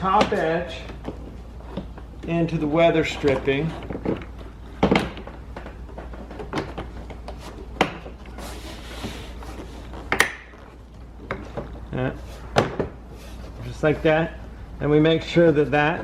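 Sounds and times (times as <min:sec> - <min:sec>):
rustling scrape: 0:08.3 - 0:10.8, 0:12.2 - 0:14.3.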